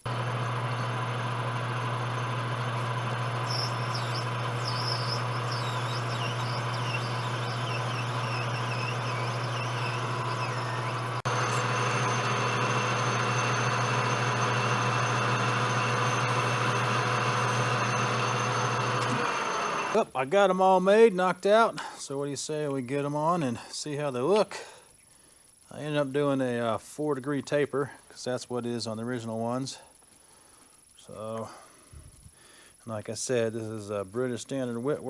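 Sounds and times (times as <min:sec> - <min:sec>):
metal lathe humming: 0:00.0 - 0:20.0
faint high chirps: 0:03.2 - 0:15.6.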